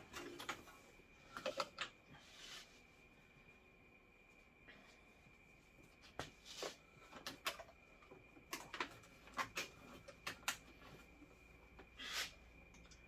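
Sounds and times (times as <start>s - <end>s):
faint clicks and scrapes: 0.0s - 2.9s.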